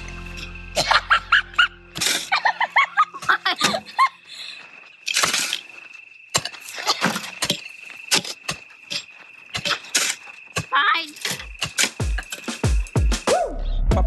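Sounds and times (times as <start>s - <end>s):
shovel and pickaxe striking soil: 2.0s - 2.5s, 5.0s - 13.5s.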